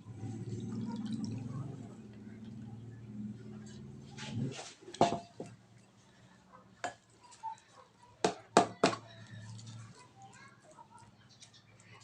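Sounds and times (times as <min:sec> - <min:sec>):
kitchenware knocking and clattering: 0:05.0 - 0:05.5.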